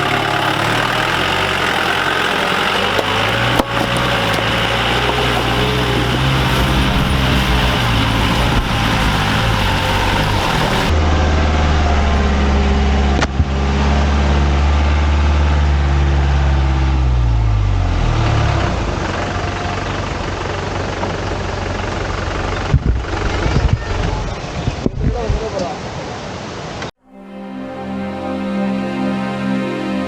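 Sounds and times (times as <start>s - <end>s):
rushing noise: 0.0s - 14.0s
vehicle engine running: 0.0s - 24.6s.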